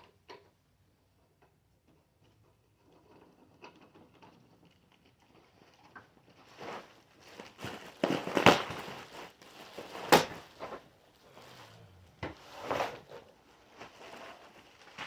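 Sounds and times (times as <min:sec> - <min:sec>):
bed parts knocking and clunking: 0:09.8 - 0:15.0.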